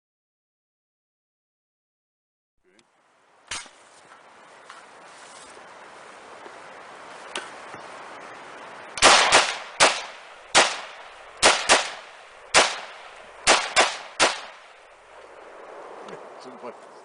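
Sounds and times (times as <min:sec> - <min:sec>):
rifle gunshots with echo: 0:09.0 - 0:14.8.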